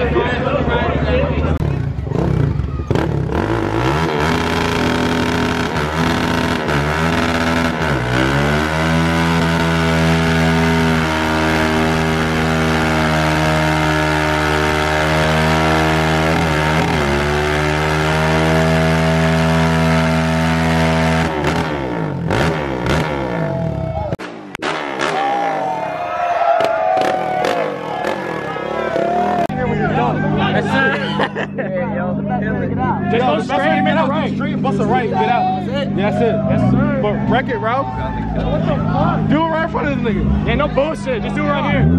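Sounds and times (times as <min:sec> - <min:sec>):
car engine revving: 0:01.2 - 0:25.9, 0:26.6 - 0:31.3, 0:32.0 - 0:41.9.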